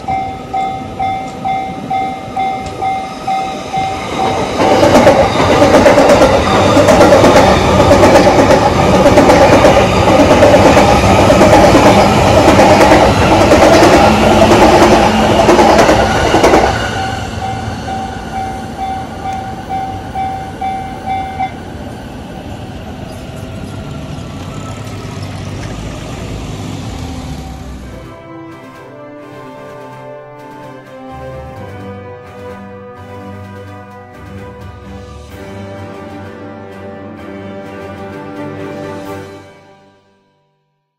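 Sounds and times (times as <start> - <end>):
crossing warning bell ringing: 0.0 - 22.0, 26.2 - 28.1
train wheels clattering over rails: 2.4 - 21.4.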